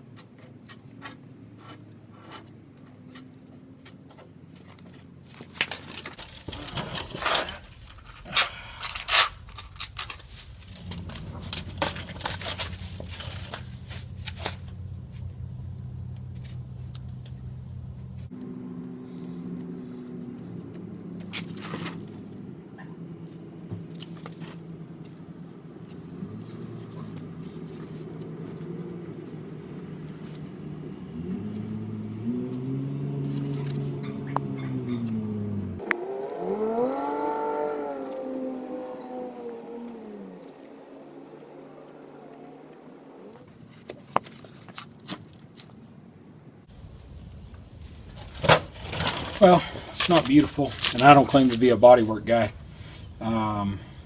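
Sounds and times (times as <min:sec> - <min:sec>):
engine running: 0:00.0 - 0:54.0
steady low hum: 0:06.1 - 0:43.8.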